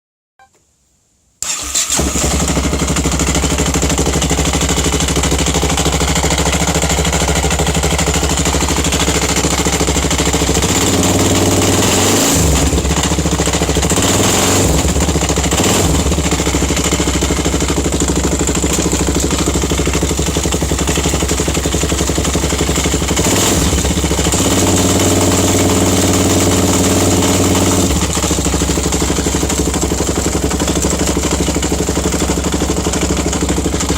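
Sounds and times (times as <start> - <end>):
motorcycle engine running: 1.4 - 33.9
metallic engine rattle: 14.9 - 33.9.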